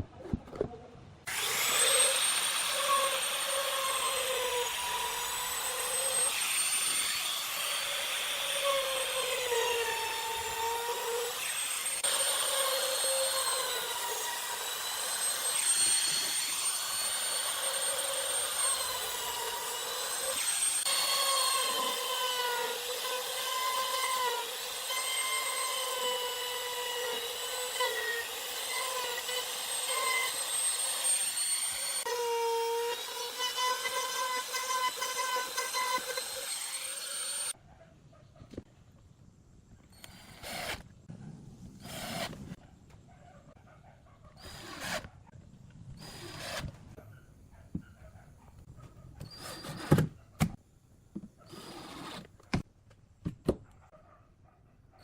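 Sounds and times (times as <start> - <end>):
power tool motor whining: 1.3 - 37.6, 39.9 - 40.9, 41.8 - 42.6, 44.4 - 45.1, 46.0 - 46.8, 51.5 - 52.4.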